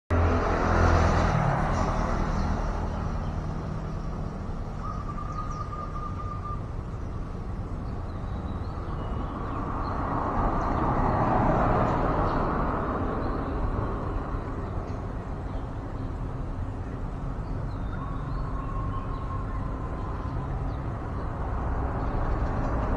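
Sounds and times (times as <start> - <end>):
distant traffic rumble: 0.1 - 22.9
bird trill: 4.7 - 7.2, 13.2 - 21.4
faint high bird chirps: 4.8 - 6.7, 16.8 - 21.3.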